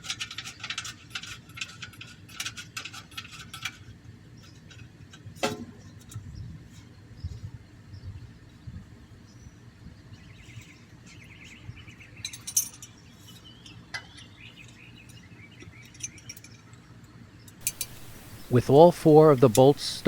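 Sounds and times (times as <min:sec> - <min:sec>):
metallic clicks and clinks: 0:17.6 - 0:18.5
birds chirping and trilling: 0:17.6 - 0:20.0.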